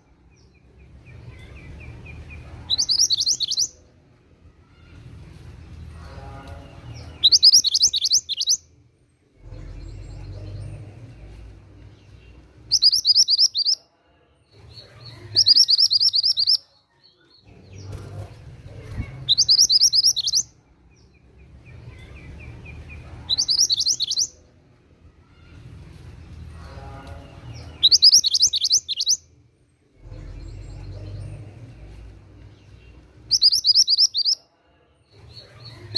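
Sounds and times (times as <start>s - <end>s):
songbird trilling: 2.7s - 3.7s, 7.2s - 8.6s, 12.7s - 13.8s, 15.3s - 16.6s, 19.3s - 20.5s, 23.3s - 24.3s, 27.8s - 29.2s, 33.3s - 34.4s
faint low rumble: 8.9s - 12.8s, 29.3s - 33.4s.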